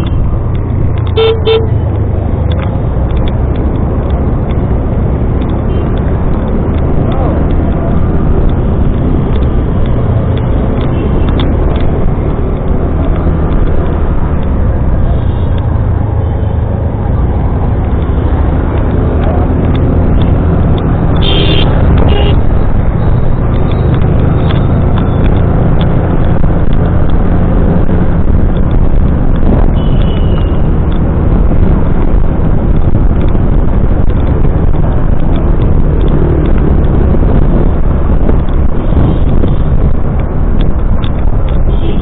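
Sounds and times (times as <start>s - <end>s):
motorcycle engine rumble: 0.0s - 42.0s
wind rushing over microphone: 0.0s - 42.0s.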